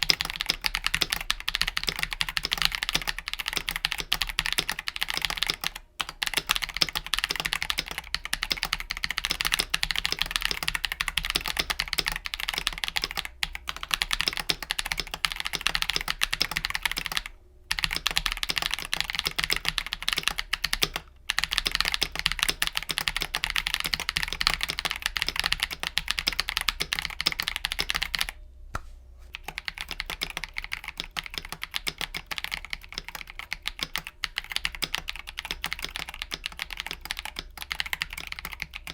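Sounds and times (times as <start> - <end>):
fast typing on mechanical keyboard: 0.0 - 28.4, 29.4 - 38.9.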